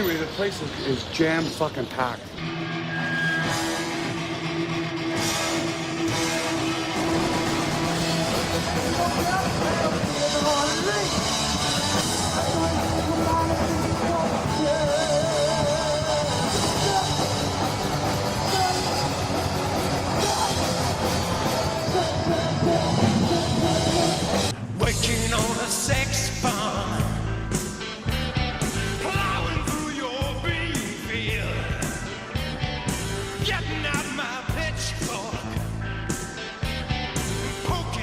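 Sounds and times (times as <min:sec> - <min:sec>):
heavy metal music: 0:00.0 - 0:38.0
drum kit: 0:03.4 - 0:38.0
person singing: 0:08.6 - 0:27.3, 0:28.8 - 0:32.2.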